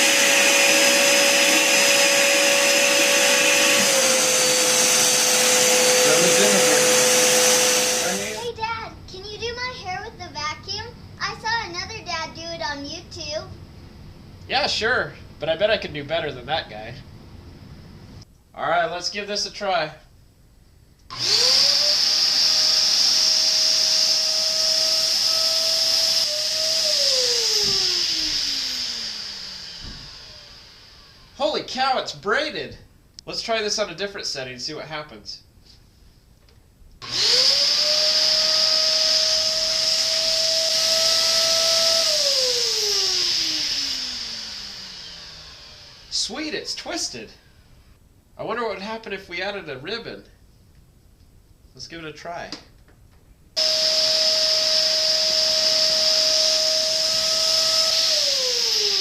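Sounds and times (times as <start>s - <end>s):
vacuum cleaner motor whine: 0.0s - 8.4s, 21.1s - 31.5s, 37.0s - 46.3s, 53.6s - 59.0s.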